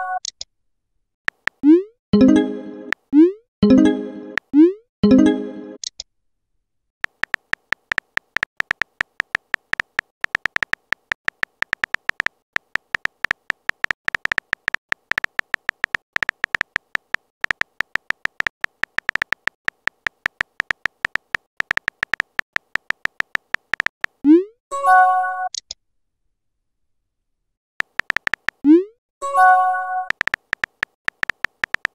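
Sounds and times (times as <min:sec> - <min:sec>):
high electronic typing beeps: 0:07.0 - 0:24.0, 0:27.8 - 0:28.9, 0:29.9 - 0:31.9.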